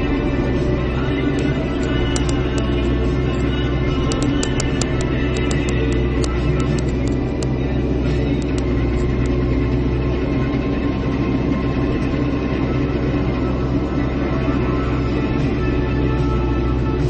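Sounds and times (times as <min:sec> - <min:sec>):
excavator diesel engine droning: 0:00.0 - 0:17.0
sharp ticks: 0:01.4 - 0:02.8, 0:04.0 - 0:07.6, 0:08.2 - 0:09.4.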